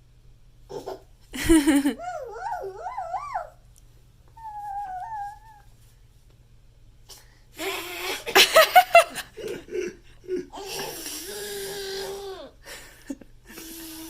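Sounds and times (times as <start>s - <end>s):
child laughing: 0.7s - 3.5s
child making breathy voice sounds: 10.6s - 12.6s.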